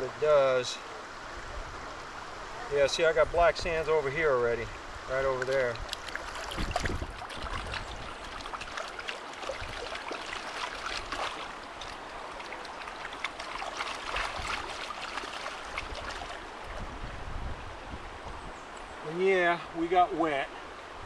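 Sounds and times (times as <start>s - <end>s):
shallow river water splashing: 4.0s - 19.1s.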